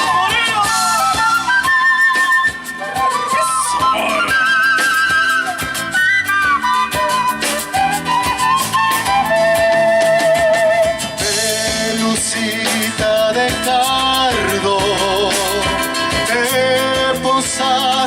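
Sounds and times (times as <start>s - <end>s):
flute-like lead melody: 0.0s - 12.6s
steady drum beat: 0.0s - 18.0s
strummed guitar: 0.0s - 18.0s.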